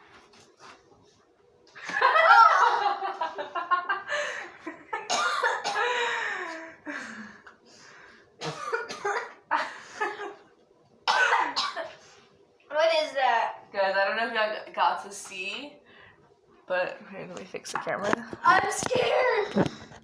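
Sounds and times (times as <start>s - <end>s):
girl coughing and gagging: 5.0s - 6.1s, 8.4s - 9.4s, 11.0s - 12.0s.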